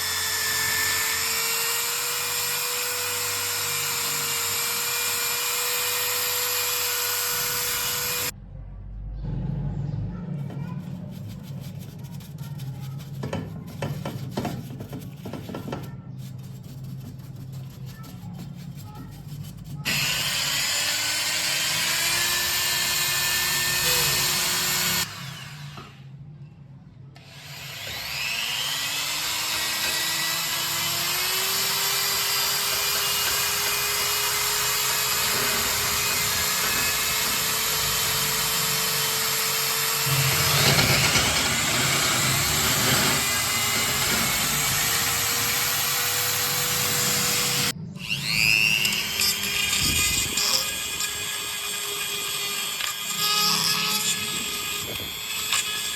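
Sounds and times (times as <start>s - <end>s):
electric power tool spinning: 0.0s - 8.3s, 19.9s - 26.0s, 27.2s - 55.9s.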